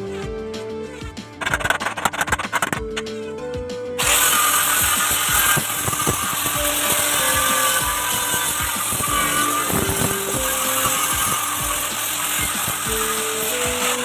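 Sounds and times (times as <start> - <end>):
quiet background music: 0.0 - 14.0
power tool running: 4.0 - 14.0.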